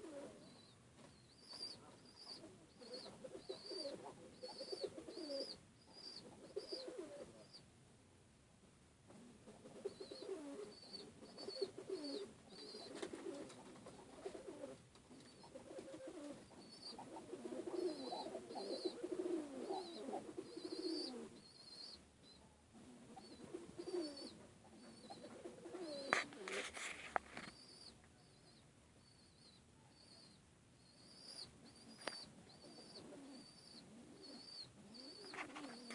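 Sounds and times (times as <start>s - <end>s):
pigeons cooing: 0.0s - 0.7s, 1.4s - 7.6s, 9.2s - 22.0s, 22.8s - 26.9s, 31.0s - 35.9s.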